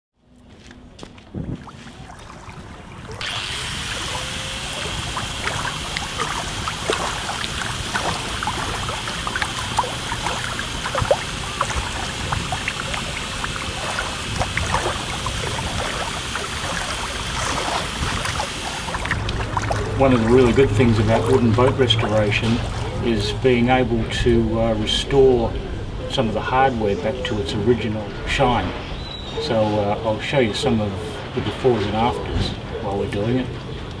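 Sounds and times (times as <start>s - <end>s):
small water splashes: 1.0s - 24.3s
boat rushing through water: 1.4s - 34.0s.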